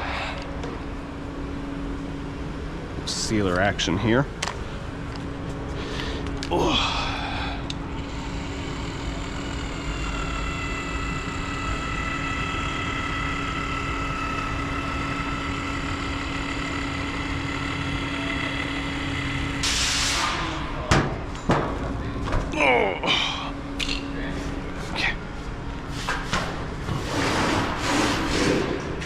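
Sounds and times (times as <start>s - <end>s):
machine humming with high whine: 0.0s - 29.0s
loud burst of hiss: 19.6s - 20.4s.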